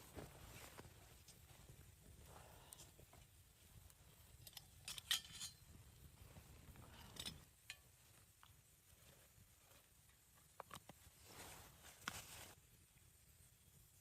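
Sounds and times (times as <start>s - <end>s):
quiet low rumble: 0.0s - 14.0s
light handling clicks and clinks: 4.3s - 5.7s, 6.9s - 7.9s.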